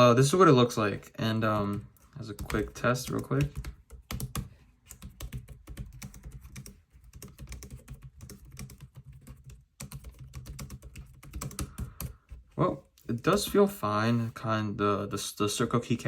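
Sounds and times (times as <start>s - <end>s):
fast typing on keyboard: 1.6s - 12.4s.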